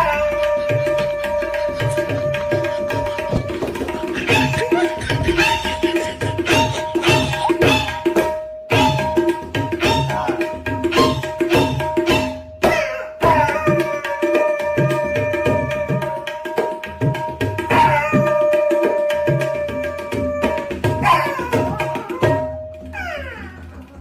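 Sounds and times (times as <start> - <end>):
quick drum rhythm: 0.4 - 14.0.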